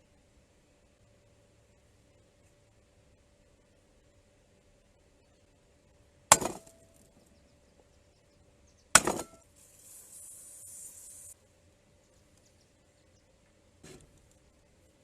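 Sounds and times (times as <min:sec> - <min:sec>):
steady high hiss: 0:00.0 - 0:15.0.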